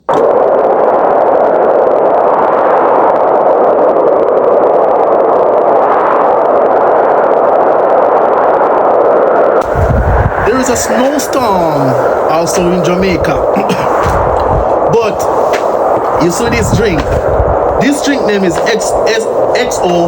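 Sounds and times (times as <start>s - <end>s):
storm wind rushing: 0.3s - 20.0s.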